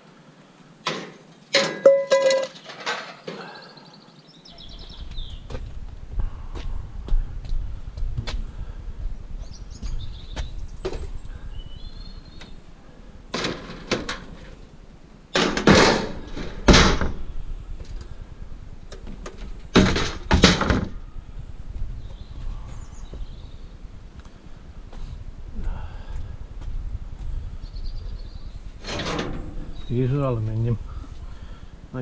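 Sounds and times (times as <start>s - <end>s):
faint birdsong: 0.3s - 5.6s, 7.2s - 13.4s, 20.7s - 26.5s, 27.1s - 32.0s
scrap metal clattering: 1.6s - 3.5s, 15.4s - 17.2s, 28.8s - 29.9s.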